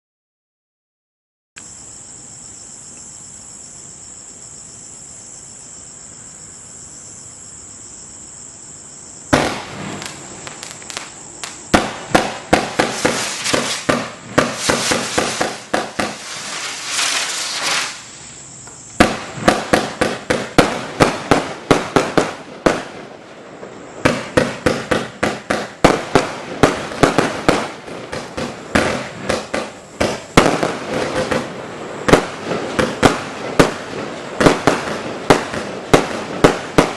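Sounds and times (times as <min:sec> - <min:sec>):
crickets chirping: 0:01.6 - 0:36.9
firework barrage shots and bursts: 0:09.3 - 0:36.9.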